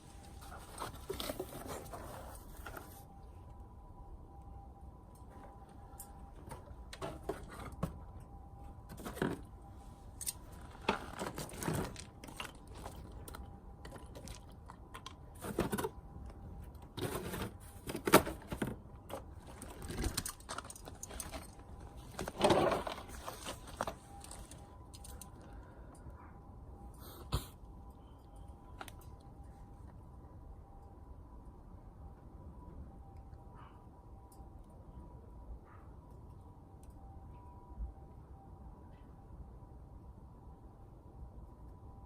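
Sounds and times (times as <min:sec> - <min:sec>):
crunching and scraping by hand: 0:00.0 - 0:03.2, 0:05.3 - 0:08.2, 0:08.9 - 0:25.6.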